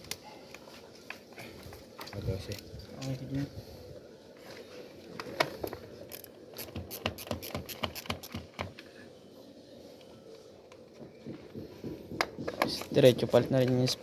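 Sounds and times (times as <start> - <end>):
ratchet wrench clicking: 6.1 - 8.4.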